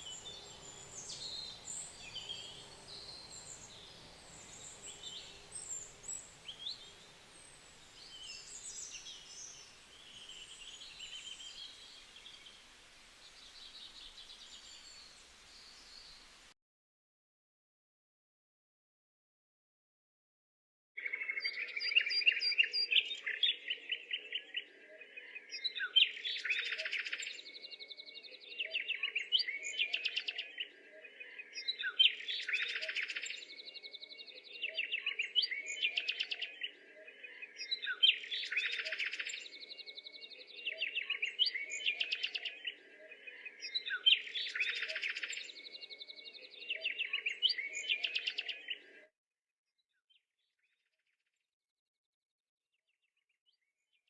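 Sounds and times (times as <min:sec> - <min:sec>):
songbird trilling song: 0:00.0 - 0:12.6, 0:21.0 - 0:49.0.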